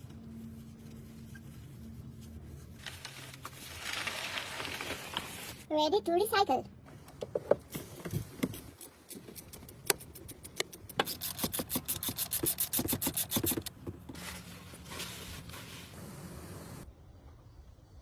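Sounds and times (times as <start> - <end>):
hand tool clicking: 8.8 - 13.7.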